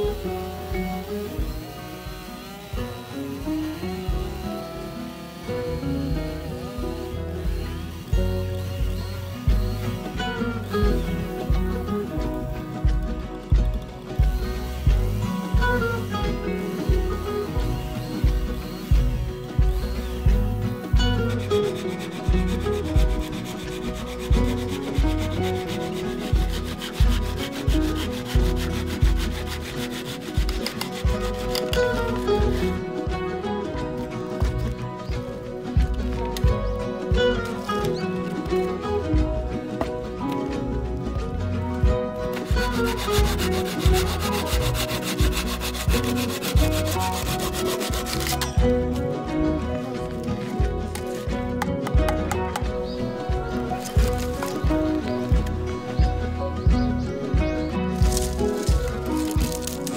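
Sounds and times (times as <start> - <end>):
low pulsing beat: 0.0 - 59.9
fast scratchy rhythm: 7.6 - 38.0, 41.8 - 49.4, 50.0 - 59.9.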